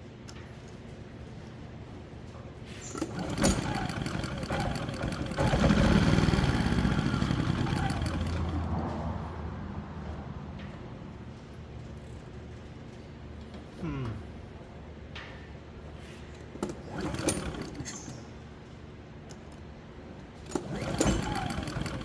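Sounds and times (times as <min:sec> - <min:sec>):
generator engine starting up: 0:02.9 - 0:08.7, 0:16.7 - 0:18.1, 0:20.5 - 0:22.0.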